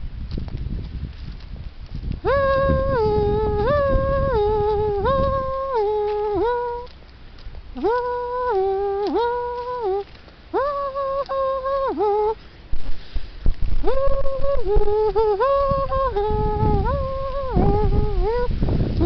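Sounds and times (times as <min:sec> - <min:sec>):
wind rumble on microphone: 0:00.0 - 0:19.0.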